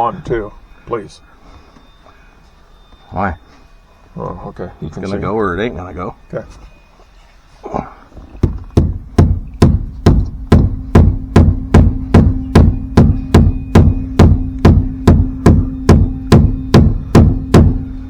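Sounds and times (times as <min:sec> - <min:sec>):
hammer striking metal: 0:08.4 - 0:18.0.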